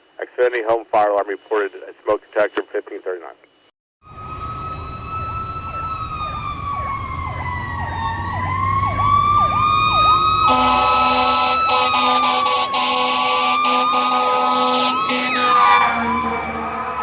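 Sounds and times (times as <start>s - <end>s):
electronic siren yelping: 4.0s - 17.0s
mechanical siren wailing: 4.0s - 17.0s
air horn blasts: 10.5s - 17.0s.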